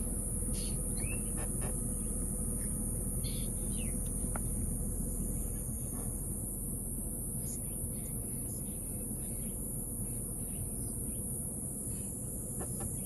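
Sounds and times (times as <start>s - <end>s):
bird chirps: 0.5s - 1.4s, 2.6s - 4.0s.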